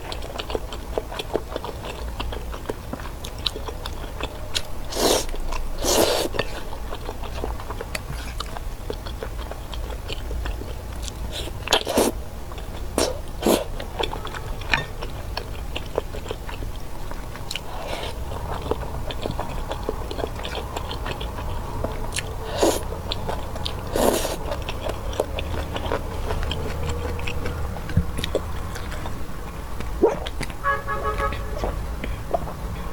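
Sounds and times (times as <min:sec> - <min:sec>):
chewing chewy food: 0:00.0 - 0:30.6, 0:31.2 - 0:32.9.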